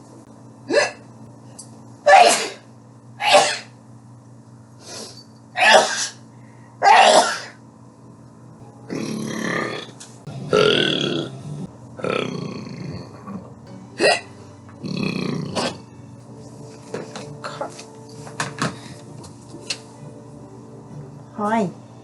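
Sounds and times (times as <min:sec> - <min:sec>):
person burping: 0:08.9 - 0:13.4, 0:14.0 - 0:15.8.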